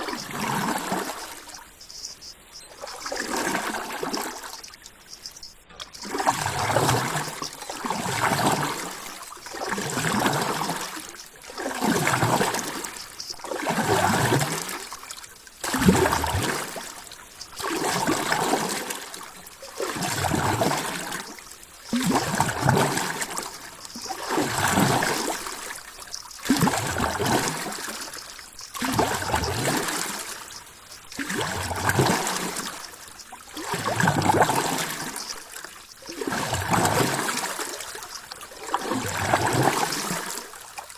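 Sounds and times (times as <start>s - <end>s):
rushing trickling water: 0.0s - 40.9s.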